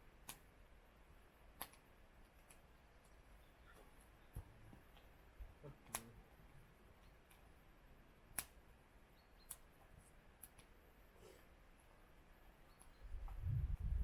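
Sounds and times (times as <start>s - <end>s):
faint sharp clicks: 10.4s - 10.8s.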